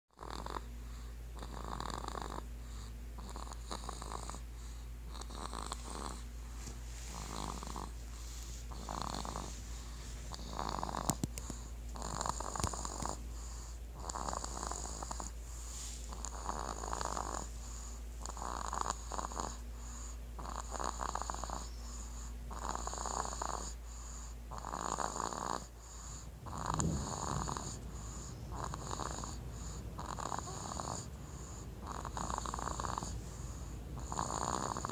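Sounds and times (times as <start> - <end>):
baby snoring: 0.2 - 6.3, 7.1 - 34.9
steady low hum: 0.2 - 34.9.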